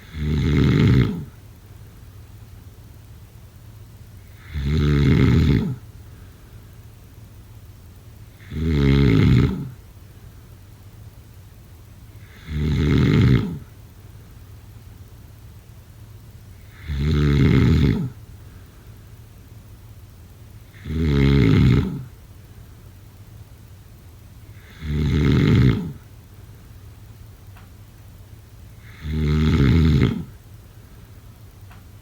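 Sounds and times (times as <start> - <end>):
person snoring: 0.0 - 1.4, 4.3 - 5.8, 8.4 - 9.8, 12.2 - 13.7, 16.7 - 18.2, 20.7 - 22.1, 24.5 - 26.0, 28.8 - 30.4.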